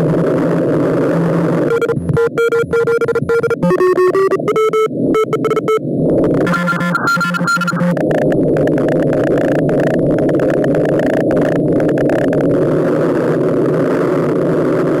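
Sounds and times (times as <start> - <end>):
radio static hiss: 0.0 - 15.0.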